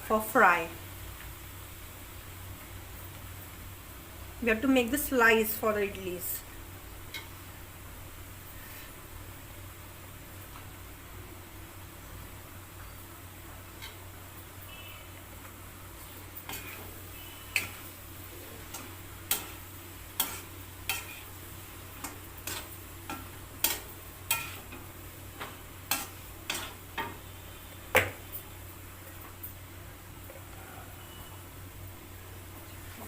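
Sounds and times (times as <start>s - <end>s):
vegetables frying: 0.0s - 30.6s.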